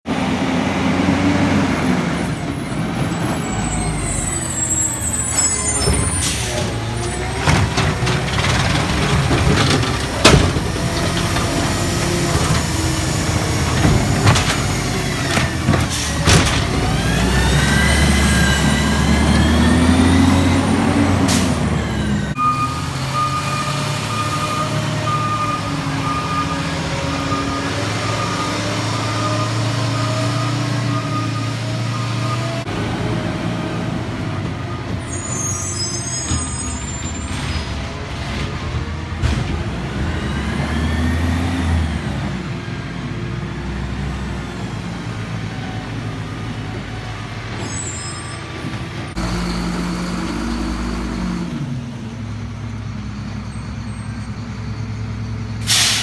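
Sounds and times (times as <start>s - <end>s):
diesel engine revving: 0.0s - 56.0s
sharp bangs and knocks: 5.9s - 18.7s.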